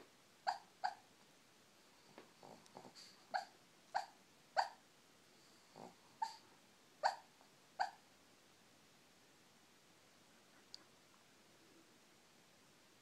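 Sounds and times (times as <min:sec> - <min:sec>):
dog whimpering in sleep: 0:00.5 - 0:01.0, 0:02.4 - 0:04.8, 0:05.8 - 0:06.4, 0:07.0 - 0:07.2, 0:07.8 - 0:08.0
dog breathing softly: 0:01.9 - 0:03.5.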